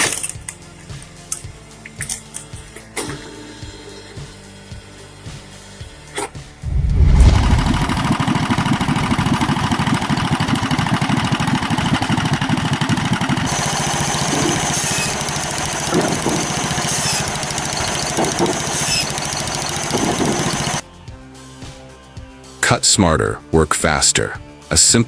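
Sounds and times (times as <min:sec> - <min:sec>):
machine whine: 0:06.6 - 0:20.8
small engine running: 0:07.0 - 0:20.8.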